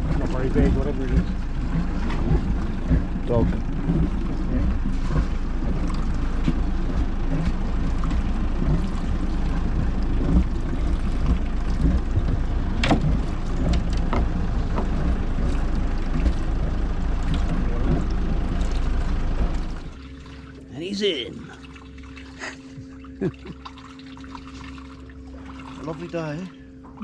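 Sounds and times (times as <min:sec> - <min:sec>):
boat engine low rumble: 0:00.0 - 0:27.0
sharp clicks and knocks: 0:11.2 - 0:16.5.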